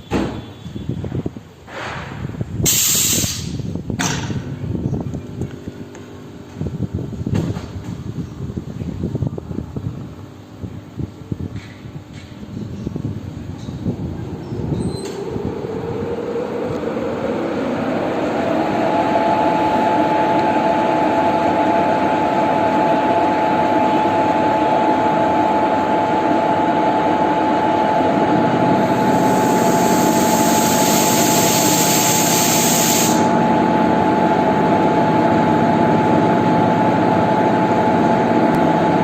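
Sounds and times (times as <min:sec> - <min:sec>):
electric locomotive whine: 0:00.0 - 0:39.0
high hiss: 0:02.6 - 0:03.6, 0:29.0 - 0:33.3.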